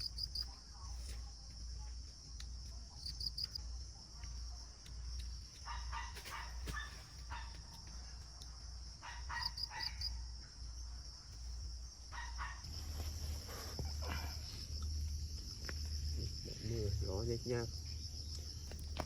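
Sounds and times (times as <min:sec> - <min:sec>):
insects droning high-pitched: 0:00.0 - 0:19.0.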